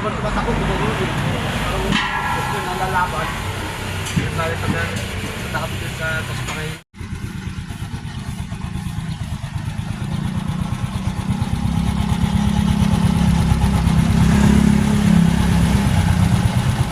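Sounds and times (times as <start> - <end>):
motorcycle engine running: 7.0 - 16.9.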